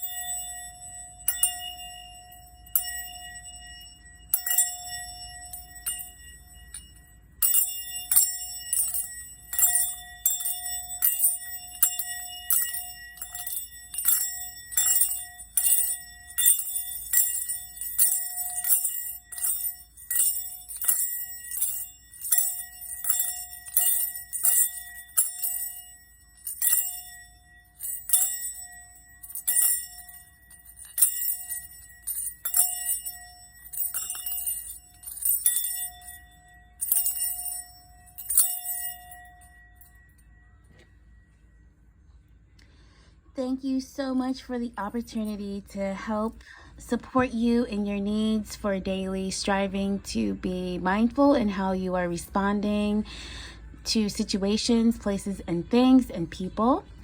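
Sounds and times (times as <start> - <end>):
bright jingling strikes: 0.0 - 41.2
singing bowl ringing: 0.0 - 42.2.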